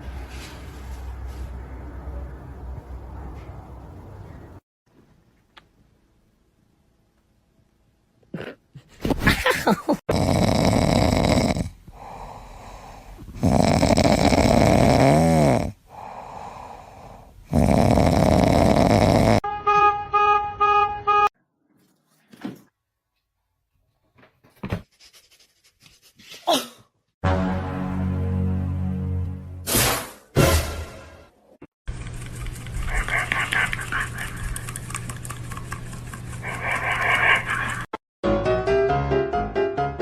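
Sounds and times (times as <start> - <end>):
rasping snoring: 10.1 - 16.1, 17.5 - 19.4.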